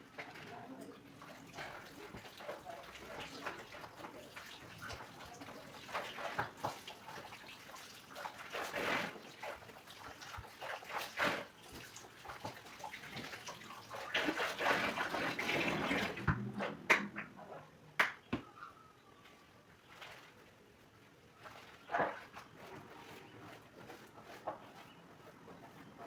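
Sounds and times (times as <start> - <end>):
water splashing and sloshing: 0.0 - 17.8.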